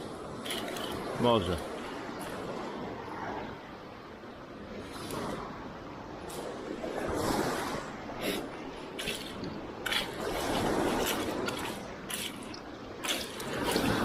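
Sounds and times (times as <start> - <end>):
seawater sloshing: 6.3 - 14.0.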